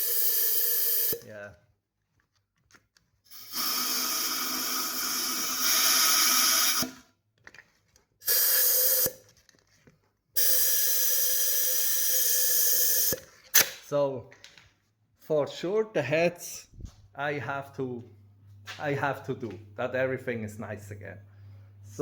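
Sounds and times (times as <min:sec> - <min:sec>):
compressed air hissing from blow gun: 0:08.3 - 0:09.1.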